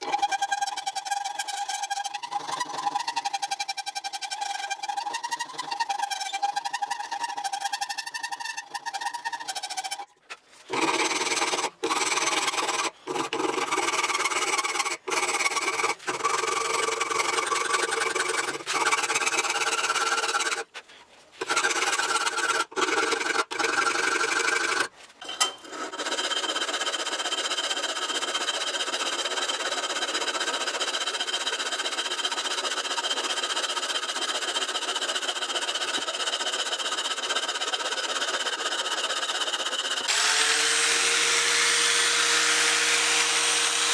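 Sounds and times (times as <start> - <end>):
metal grinding harsh rasping: 21.4 - 43.9.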